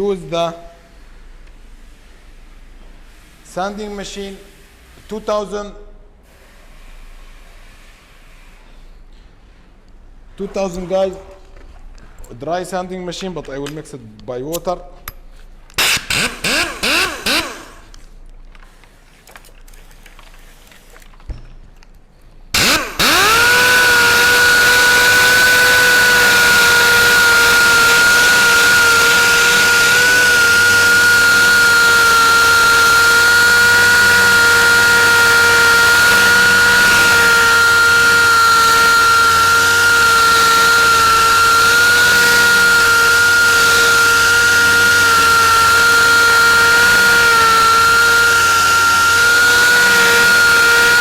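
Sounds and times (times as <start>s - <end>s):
sanding machine whining: 15.8s - 18.0s, 22.6s - 51.0s.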